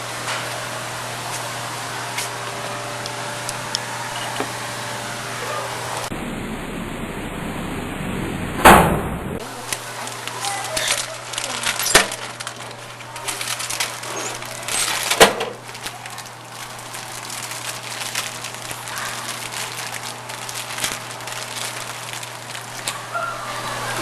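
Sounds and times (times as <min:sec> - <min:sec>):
low hum: 0:01.8 - 0:10.2
snack bag crinkling: 0:09.4 - 0:24.0.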